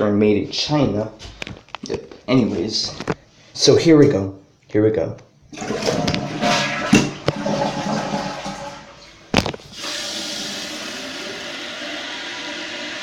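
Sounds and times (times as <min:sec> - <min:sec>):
toilet flushing water rushing: 0:05.5 - 0:13.0
tank refilling hiss: 0:09.8 - 0:13.0.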